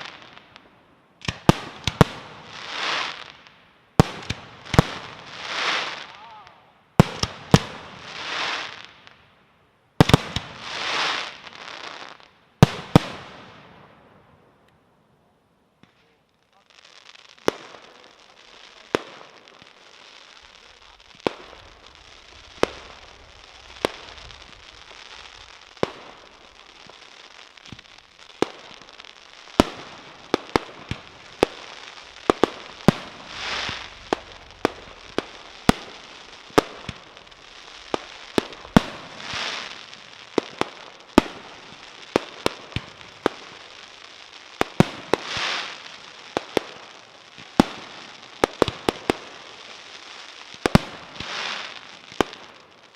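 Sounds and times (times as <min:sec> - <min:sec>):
fireworks crackle: 0:00.0 - 0:14.7, 0:15.8 - 0:52.9
firework shells bursting: 0:29.5 - 0:43.6.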